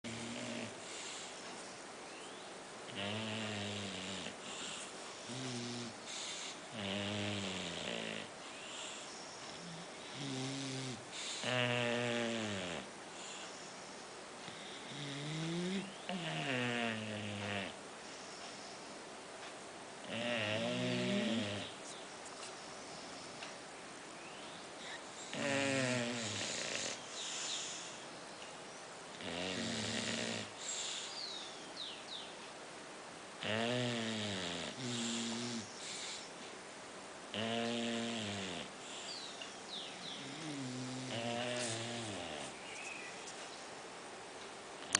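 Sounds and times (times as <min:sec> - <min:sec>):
puppies snoring: 0:00.0 - 0:18.8, 0:20.0 - 0:21.9, 0:24.8 - 0:28.1, 0:29.1 - 0:31.6, 0:33.4 - 0:36.4, 0:37.3 - 0:42.8
hissing breaths: 0:24.7 - 0:28.1, 0:30.2 - 0:31.6, 0:34.7 - 0:36.4, 0:38.6 - 0:42.6.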